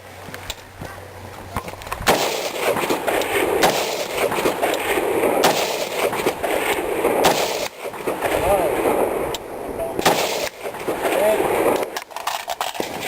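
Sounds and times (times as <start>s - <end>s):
rifle shots: 2.0s - 9.4s, 10.0s - 13.0s.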